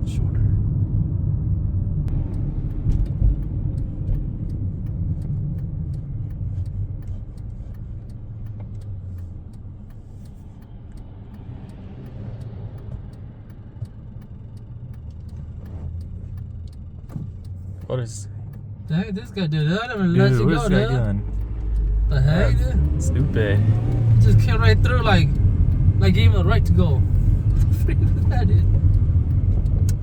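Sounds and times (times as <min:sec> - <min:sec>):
car engine and road rumble: 0:00.0 - 0:30.0
faint ticking: 0:02.1 - 0:30.0.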